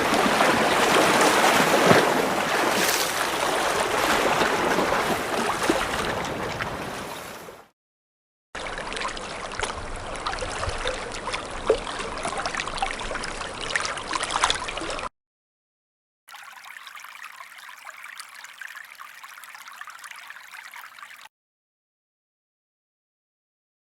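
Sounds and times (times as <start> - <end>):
loud wash of water: 0.0 - 7.3
water trickling with splashes: 0.0 - 7.5, 8.6 - 15.1, 16.3 - 21.3.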